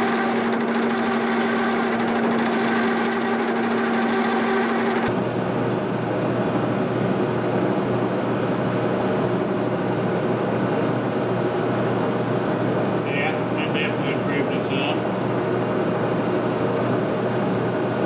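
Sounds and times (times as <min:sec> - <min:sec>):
boring machine running: 0:00.0 - 0:05.2.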